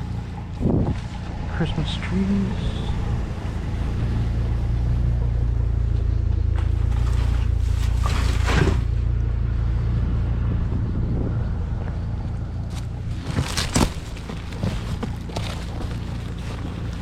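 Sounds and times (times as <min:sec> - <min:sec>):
vehicle engine droning: 0:00.0 - 0:17.0.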